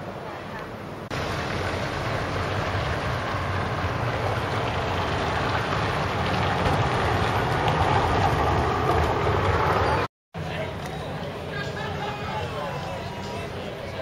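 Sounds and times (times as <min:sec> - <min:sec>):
low engine hum: 0:01.1 - 0:10.1.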